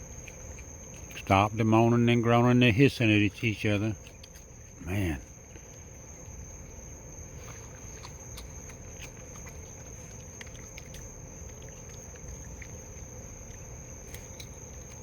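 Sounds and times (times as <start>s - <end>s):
high insect drone: 0.0s - 15.0s
raccoons eating with clicks and taps: 0.0s - 15.0s.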